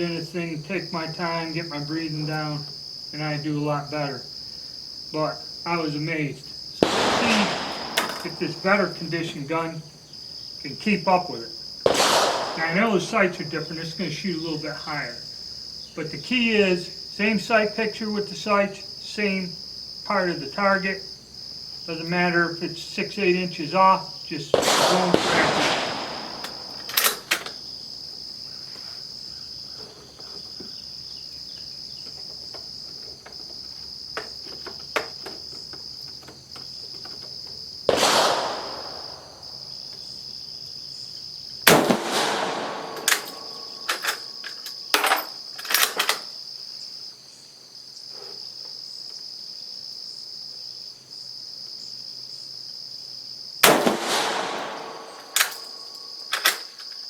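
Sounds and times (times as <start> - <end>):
insect trill: 0.0 - 57.0
rifle bolt clicks: 6.8 - 8.7, 24.6 - 27.6, 41.7 - 46.2, 53.6 - 56.7
rifle shots echoing: 6.8 - 9.6, 11.8 - 14.0, 24.5 - 27.6, 37.9 - 39.8, 41.7 - 44.4, 53.6 - 56.3.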